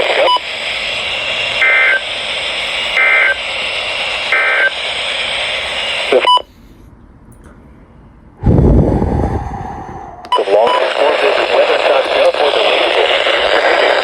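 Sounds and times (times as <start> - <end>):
radio click: 0.0 - 0.4, 10.2 - 14.0
radio static hiss: 0.0 - 6.8, 10.3 - 14.0.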